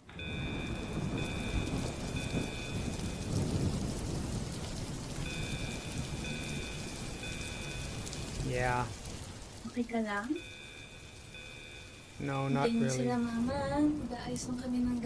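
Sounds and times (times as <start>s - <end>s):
heavy rain falling: 0.0s - 15.0s
thunder rumbling: 0.0s - 15.0s
electronic beep: 0.1s - 3.4s, 5.2s - 8.3s, 10.3s - 13.2s.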